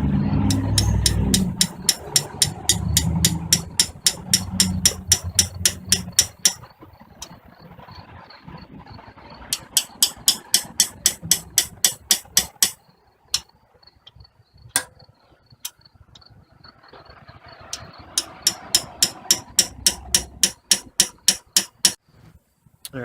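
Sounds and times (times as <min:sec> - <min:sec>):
hammer tapping on metal bolt: 0:00.5 - 0:06.6, 0:09.6 - 0:12.8, 0:17.8 - 0:22.0.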